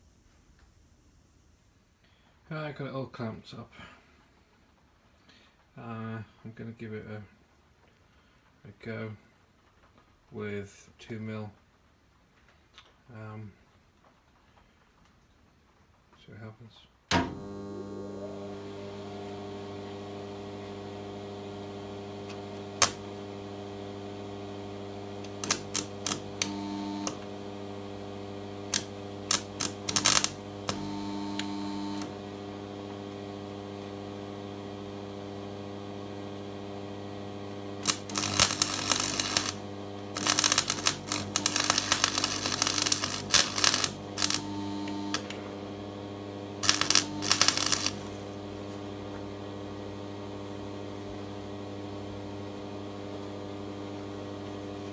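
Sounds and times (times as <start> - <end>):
welder hum: 17.1 - 54.9
arc welding crackle: 20.6 - 54.9.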